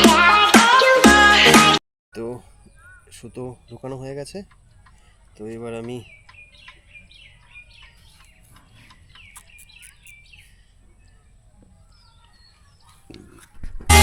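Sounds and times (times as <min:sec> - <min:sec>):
small birds chirping: 0:02.2 - 0:13.7.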